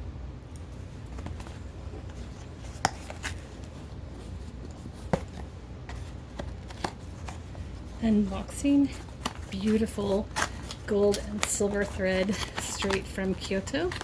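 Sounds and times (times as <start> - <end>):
low steady hum: 0.0 - 14.0
package handling taps and clicks: 2.7 - 3.7.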